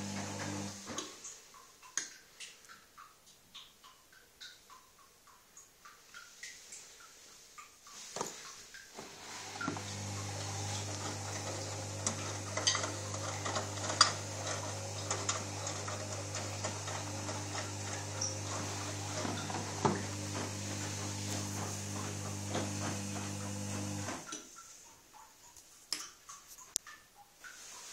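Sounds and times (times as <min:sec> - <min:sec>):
washing machine electrical hum: 0:00.0 - 0:00.9, 0:09.0 - 0:24.3
water filling hiss: 0:00.0 - 0:01.7, 0:05.9 - 0:24.8.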